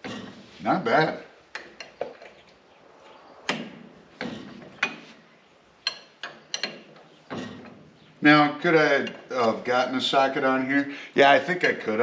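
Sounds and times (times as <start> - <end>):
wrench clicking on bolt: 5.8 - 7.6.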